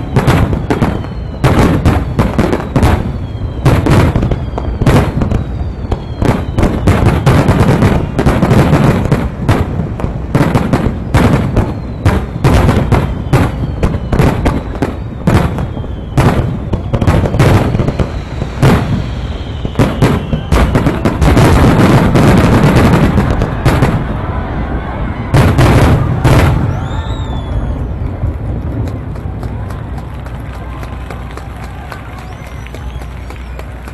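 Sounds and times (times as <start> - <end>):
fireworks falling whistles: 0.0 - 28.3, 29.9 - 33.9
fireworks shells bursting: 10.4 - 23.8.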